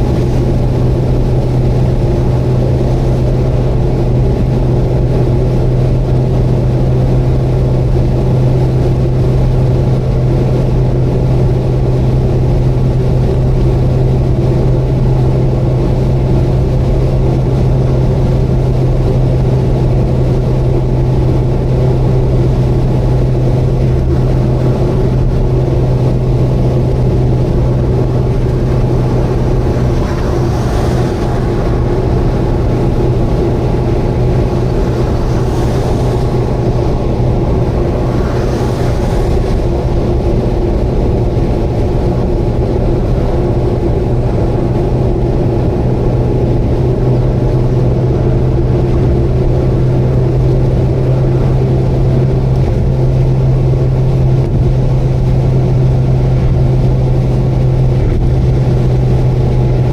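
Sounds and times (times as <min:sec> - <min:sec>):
car engine drone: 0:00.0 - 0:59.9
road noise: 0:00.0 - 0:59.9.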